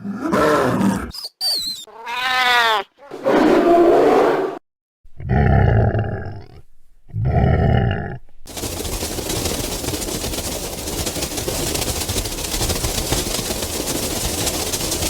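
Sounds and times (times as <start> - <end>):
animal-like roars: 3.1 - 4.6, 5.2 - 8.3.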